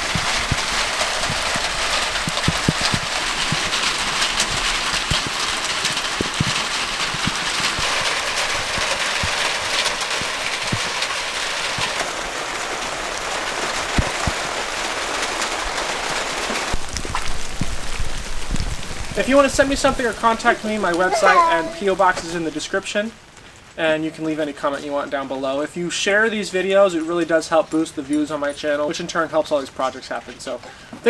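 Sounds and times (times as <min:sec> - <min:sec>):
rain falling on ground: 0:00.0 - 0:31.0.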